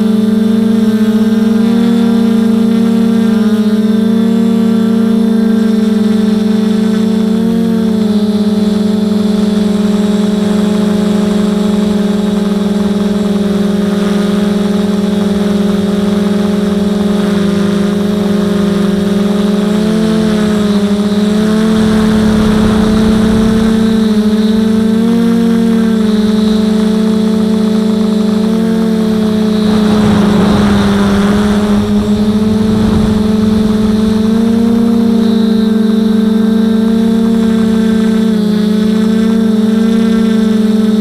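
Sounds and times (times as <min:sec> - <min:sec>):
drone propellers buzzing: 0:00.0 - 0:41.0
rushing noise: 0:21.2 - 0:25.0, 0:29.0 - 0:35.9.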